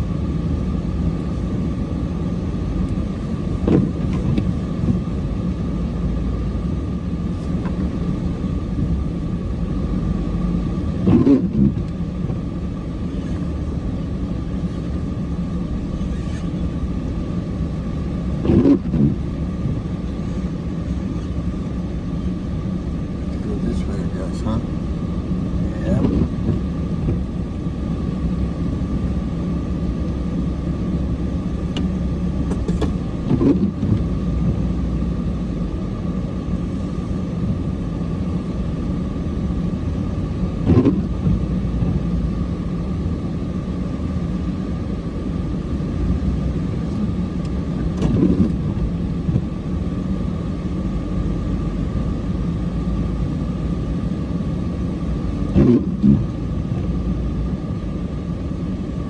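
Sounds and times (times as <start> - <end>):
diesel truck engine rumbling: 0.0 - 59.0
short thump: 31.7 - 34.0.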